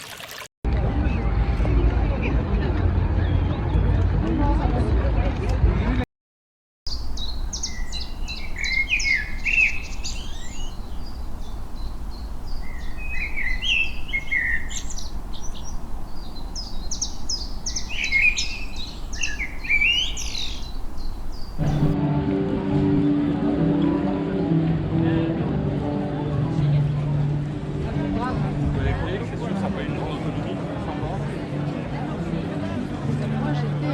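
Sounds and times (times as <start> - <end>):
low background rumble: 6.9 - 22.0
songbirds chirping and trilling: 6.9 - 22.0.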